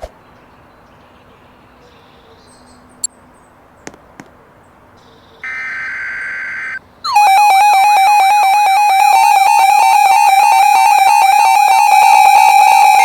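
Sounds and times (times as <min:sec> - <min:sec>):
digital data tones: 0:05.4 - 0:13.0
synthesized alert tone: 0:07.1 - 0:13.0.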